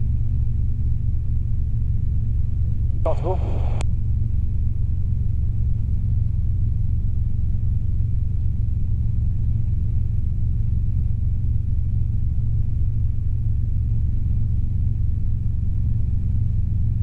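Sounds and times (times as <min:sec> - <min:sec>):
helicopter engine and rotor drone: 0:00.4 - 0:08.9.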